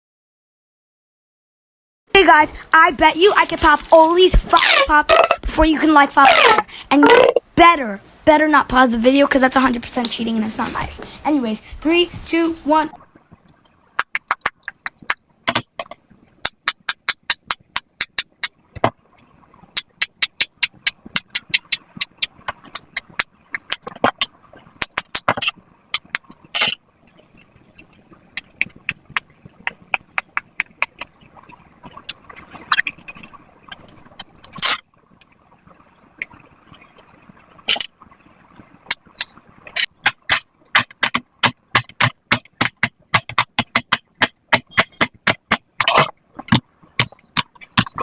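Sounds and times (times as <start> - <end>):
fidget toy bubbles popping: 4.3 - 5.6, 6.2 - 7.4, 13.5 - 19.0, 19.7 - 26.8, 28.3 - 31.1.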